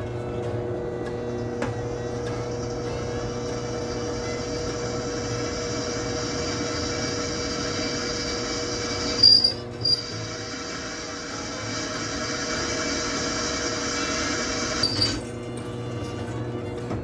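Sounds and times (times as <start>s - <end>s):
drill press drilling steel: 3.8s - 15.2s.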